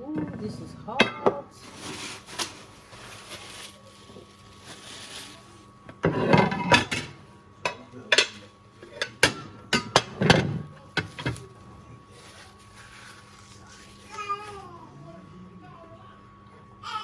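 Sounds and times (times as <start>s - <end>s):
plates clinking: 5.9s - 11.5s
serving spoon scraping pot: 6.0s - 7.1s.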